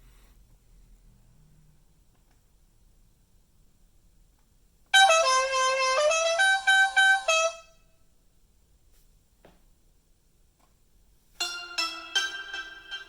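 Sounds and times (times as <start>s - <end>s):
buzzy horn-like tune: 5.0s - 7.8s.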